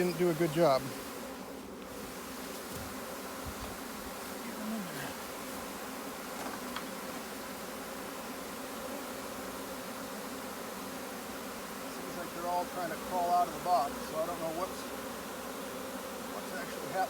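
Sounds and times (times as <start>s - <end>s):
bees buzzing: 0.0s - 17.0s
single bee buzz falling in pitch: 0.0s - 17.0s.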